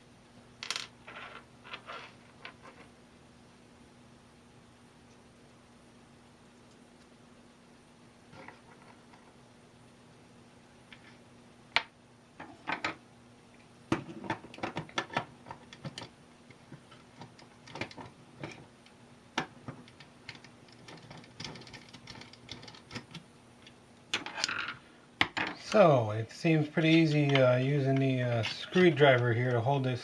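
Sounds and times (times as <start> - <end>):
faint steady hum: 0.0 - 30.0.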